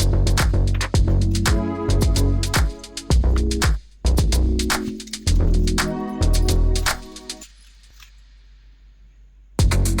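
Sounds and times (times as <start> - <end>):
background music with drums and bass: 0.0 - 7.5, 9.6 - 10.0.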